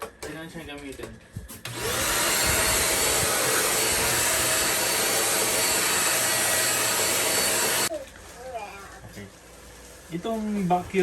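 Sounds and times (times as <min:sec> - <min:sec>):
stick vacuum cleaner running: 0:01.6 - 0:07.9.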